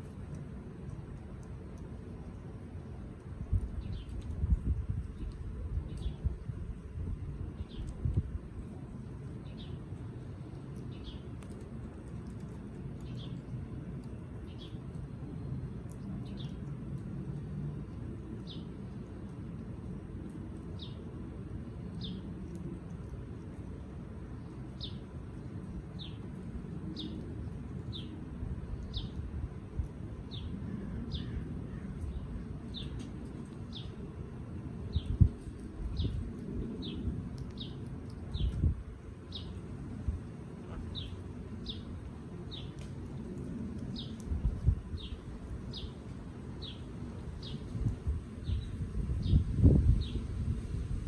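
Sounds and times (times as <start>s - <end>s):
low background rumble: 0.0s - 51.0s
bird chirping: 9.4s - 9.8s, 10.8s - 11.6s, 13.0s - 13.5s, 14.4s - 16.6s, 26.9s - 29.2s, 36.8s - 38.7s, 40.8s - 42.8s, 45.0s - 46.0s, 46.6s - 47.7s.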